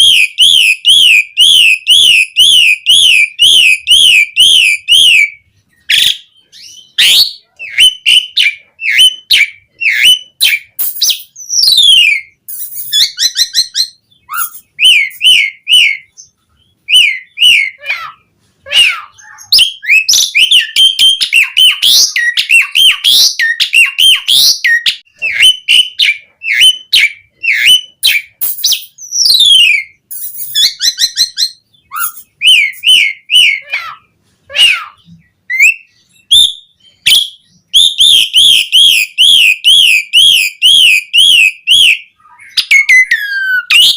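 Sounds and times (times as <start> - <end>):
starling singing: 0.0 - 43.9.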